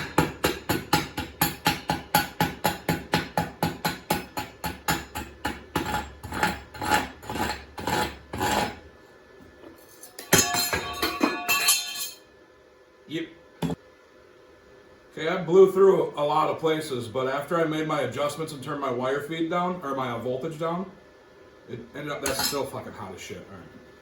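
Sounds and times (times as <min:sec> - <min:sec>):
hammer striking steel: 0:10.0 - 0:12.2.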